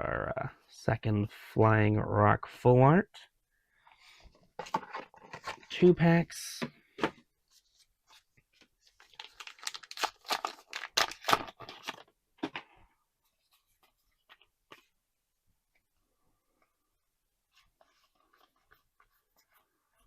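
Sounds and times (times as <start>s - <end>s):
wrapper tearing and crinkling: 9.0s - 12.0s.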